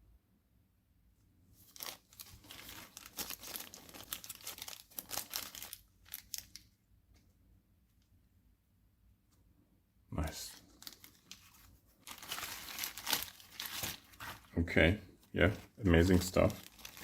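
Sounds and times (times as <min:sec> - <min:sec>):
packaging crinkling: 0:01.6 - 0:06.8, 0:10.5 - 0:14.6, 0:15.3 - 0:17.0.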